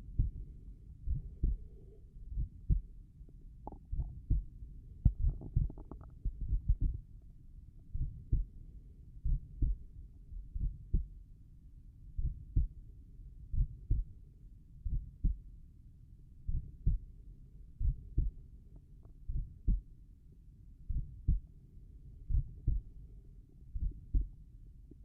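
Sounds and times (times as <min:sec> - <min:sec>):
slow heartbeat: 0:00.0 - 0:07.1, 0:07.9 - 0:08.6, 0:09.2 - 0:11.2, 0:12.2 - 0:12.8, 0:13.5 - 0:14.2, 0:14.8 - 0:15.5, 0:16.5 - 0:17.1, 0:17.8 - 0:19.9, 0:20.9 - 0:21.5, 0:22.2 - 0:23.0, 0:23.7 - 0:25.0.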